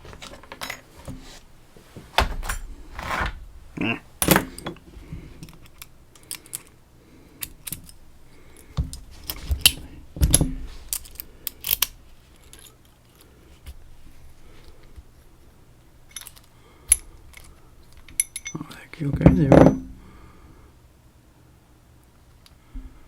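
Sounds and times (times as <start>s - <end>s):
metallic clicks of padlock and tools: 4.2s - 4.8s, 8.9s - 12.7s, 16.1s - 18.7s.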